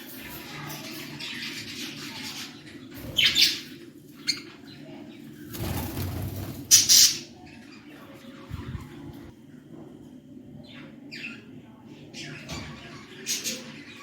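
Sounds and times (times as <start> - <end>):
wings flapping: 5.5 - 7.1
budgerigars chirping: 6.7 - 7.3.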